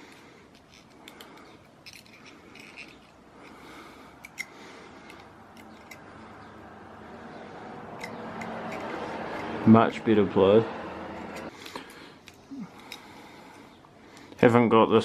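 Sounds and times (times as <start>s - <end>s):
pliers clicking on metal blade: 8.0s - 9.5s.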